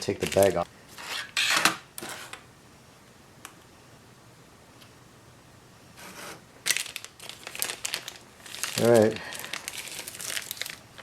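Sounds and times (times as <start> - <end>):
plastic bag rustling: 0.0 - 0.6, 6.1 - 11.0.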